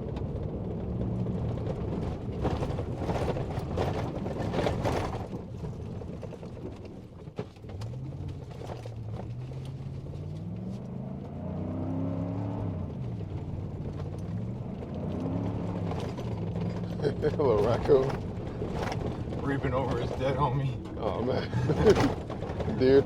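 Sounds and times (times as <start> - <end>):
knocks and rattles: 1.6 - 9.7, 13.2 - 23.0
vehicle engine revving: 7.8 - 23.0.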